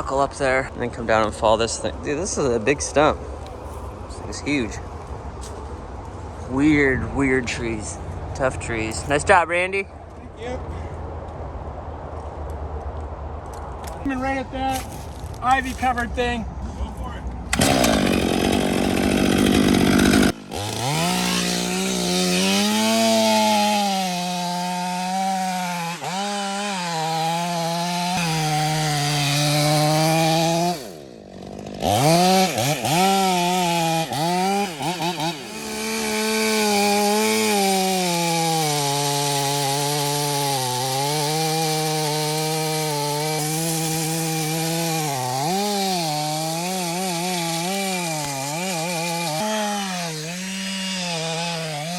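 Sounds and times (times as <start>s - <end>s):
chainsaw cutting wood: 17.5s - 51.9s.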